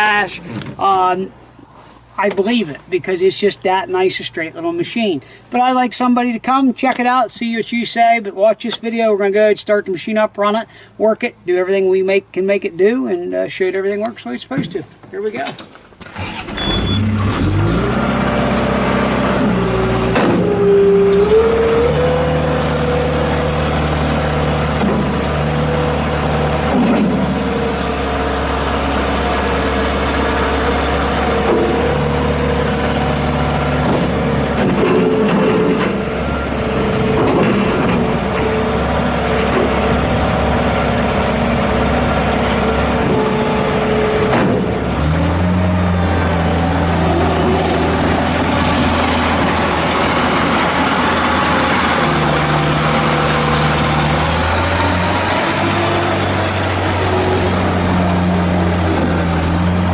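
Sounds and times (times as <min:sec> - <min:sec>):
diesel engine revving: 0:16.0 - 0:59.9.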